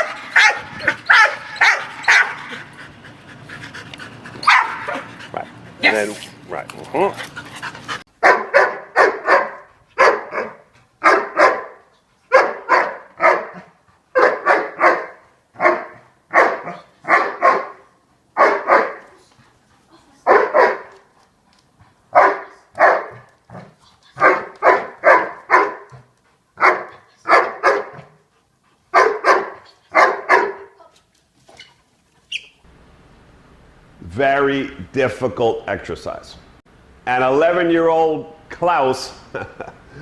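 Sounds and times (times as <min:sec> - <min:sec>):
dog barking: 0:00.0 - 0:02.6, 0:04.4 - 0:05.1, 0:08.2 - 0:19.0, 0:20.2 - 0:21.0, 0:22.1 - 0:26.0, 0:26.6 - 0:28.2, 0:28.9 - 0:30.8.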